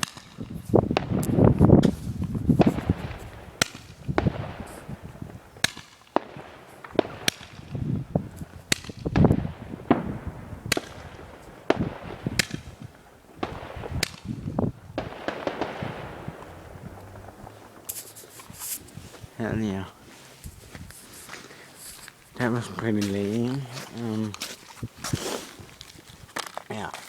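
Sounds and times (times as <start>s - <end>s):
dull firework thumps: 0.0s - 19.3s
firework cracks: 0.0s - 27.0s.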